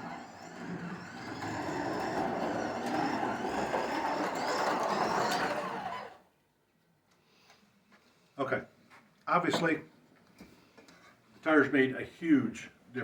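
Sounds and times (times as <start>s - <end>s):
gear and tire rumble: 0.0s - 6.2s
slot car motor whine: 0.0s - 6.2s.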